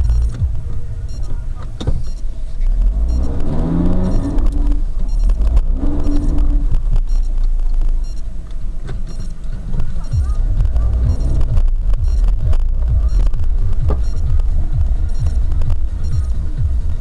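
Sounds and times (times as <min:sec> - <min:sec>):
off-road vehicle engine revving: 0:00.0 - 0:17.0.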